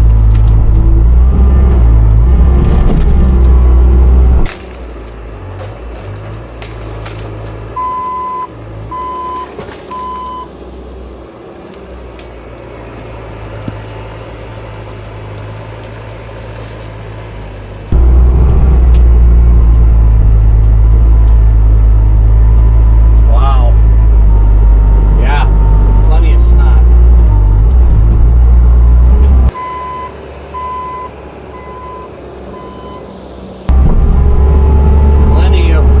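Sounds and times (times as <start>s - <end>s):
loader diesel engine running: 0.0s - 36.0s
backup alarm beeps: 7.8s - 10.5s, 29.5s - 33.1s.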